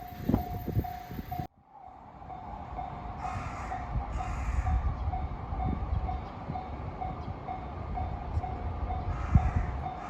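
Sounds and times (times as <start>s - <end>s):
level-crossing bell ringing: 0.0s - 3.2s.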